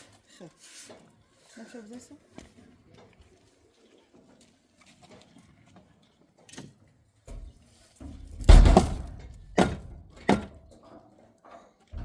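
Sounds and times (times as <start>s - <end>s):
knocks and thuds: 7.3s - 10.6s
rattling: 8.1s - 10.6s.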